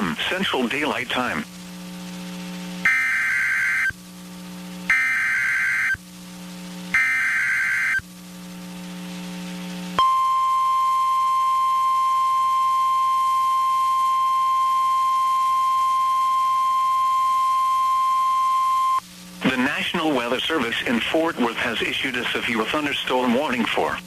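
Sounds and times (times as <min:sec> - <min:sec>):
buzzy digital data bursts: 0:00.0 - 0:24.0
faint hum: 0:00.0 - 0:24.0
steady warning alarm tone: 0:02.8 - 0:04.0, 0:04.9 - 0:06.0, 0:06.9 - 0:08.1, 0:10.0 - 0:19.0.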